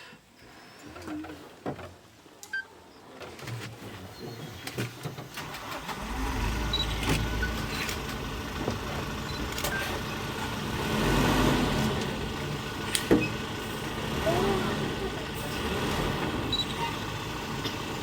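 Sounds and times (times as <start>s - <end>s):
vehicle engine running: 5.4s - 18.0s.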